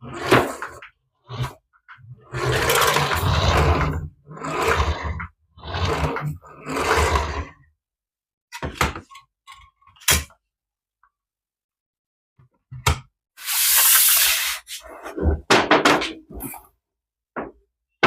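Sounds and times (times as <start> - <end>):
short hiss: 13.4 - 14.7.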